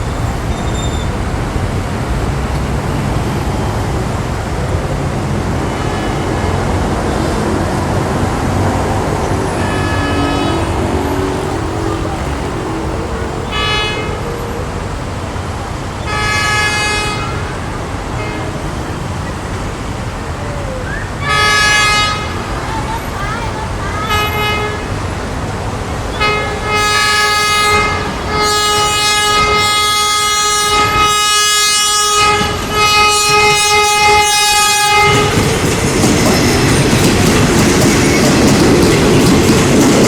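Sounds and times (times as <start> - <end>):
train low rumble: 0.0 - 40.0
train horn toots: 5.7 - 7.8, 9.4 - 14.6, 16.0 - 18.9, 21.2 - 22.5, 24.0 - 25.2, 26.1 - 35.5.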